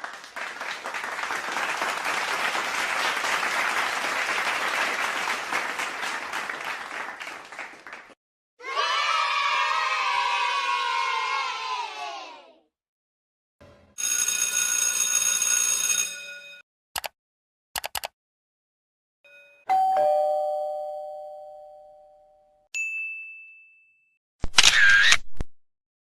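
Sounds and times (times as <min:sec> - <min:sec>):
quick clicks: 0:17.8 - 0:18.1
doorbell ding-dong: 0:19.3 - 0:24.2
short high ding: 0:19.3 - 0:24.2.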